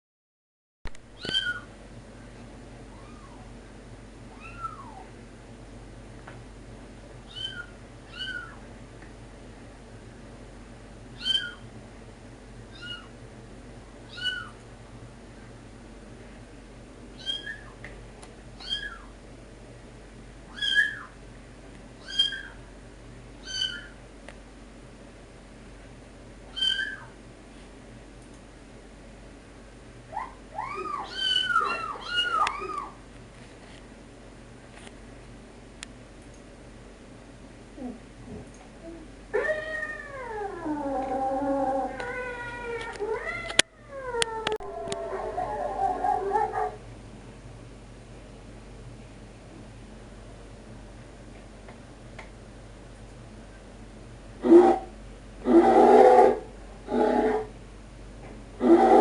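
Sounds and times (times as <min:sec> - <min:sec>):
cat meowing: 0:02.9 - 0:03.4, 0:04.3 - 0:05.1, 0:07.3 - 0:08.6, 0:12.7 - 0:13.1, 0:30.6 - 0:33.0, 0:41.9 - 0:45.0.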